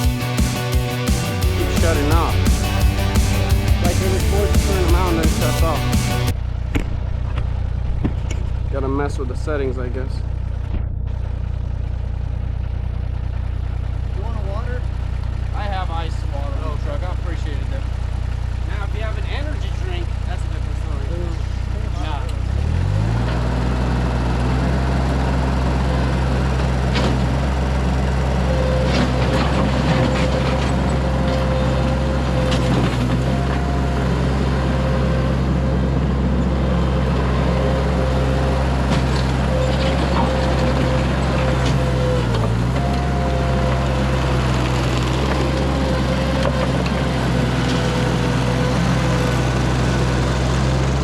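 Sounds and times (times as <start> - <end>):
high whine: 0.0 - 10.0
skid steer engine running: 0.0 - 51.0.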